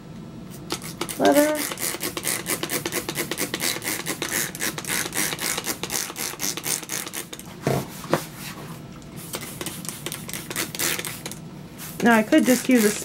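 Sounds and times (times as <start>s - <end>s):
trigger spray bottle spraying: 9.3s - 13.0s.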